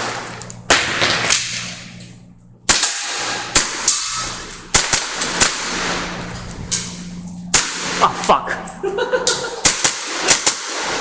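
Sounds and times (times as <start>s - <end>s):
airsoft pistol shots: 2.7s - 6.1s, 7.5s - 8.2s, 9.6s - 11.0s.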